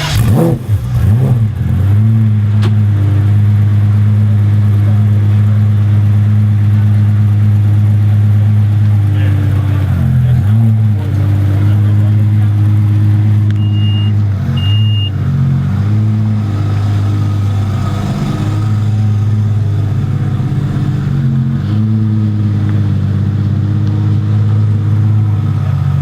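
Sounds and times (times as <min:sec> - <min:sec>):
car engine running: 0:00.0 - 0:26.0
short high beeps: 0:13.6 - 0:15.2.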